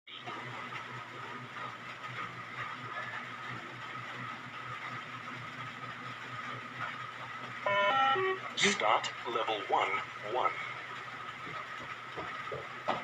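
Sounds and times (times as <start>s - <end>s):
background hum and hiss: 7.6s - 13.0s
faint high tones: 7.7s - 8.6s.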